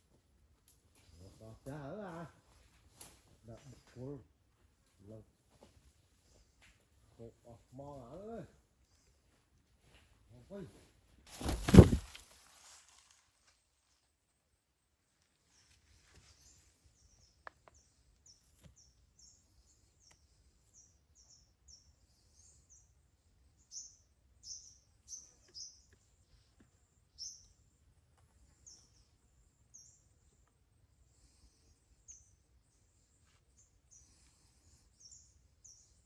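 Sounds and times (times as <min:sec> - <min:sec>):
bird chirping: 0:23.6 - 0:26.2, 0:27.1 - 0:27.6.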